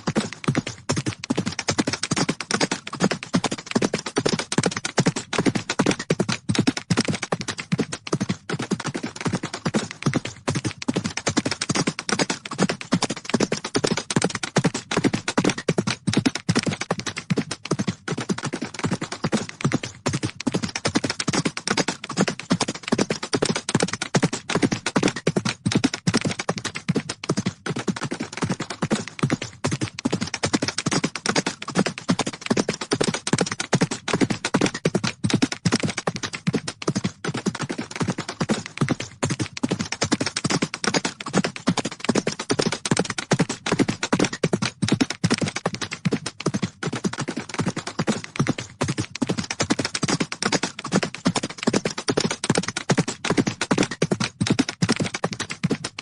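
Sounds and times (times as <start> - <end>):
horse hooves galloping: 0.0 - 56.0.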